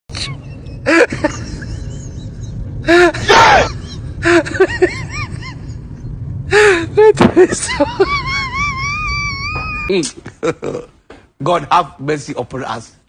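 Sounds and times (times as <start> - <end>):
steady low hum: 0.1 - 11.4
person yelping: 2.9 - 3.8.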